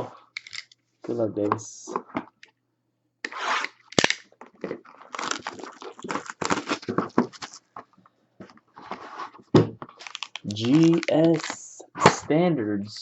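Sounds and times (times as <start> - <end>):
cardboard packaging tearing: 4.9 - 7.6, 9.9 - 11.6.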